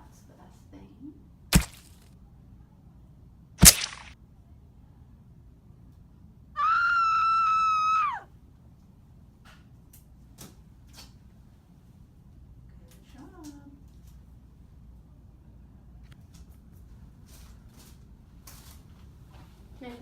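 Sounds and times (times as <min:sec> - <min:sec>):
sharp smacks: 0:01.5 - 0:02.1, 0:03.6 - 0:04.2
high-pitched scream: 0:06.6 - 0:08.3.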